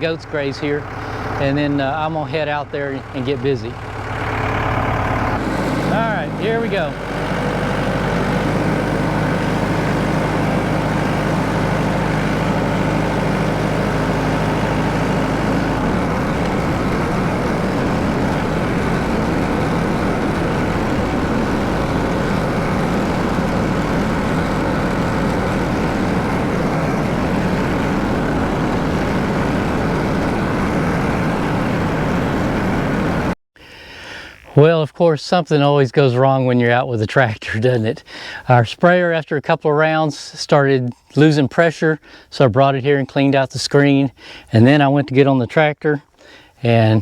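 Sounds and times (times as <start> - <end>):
tractor engine running: 0.0 - 33.4.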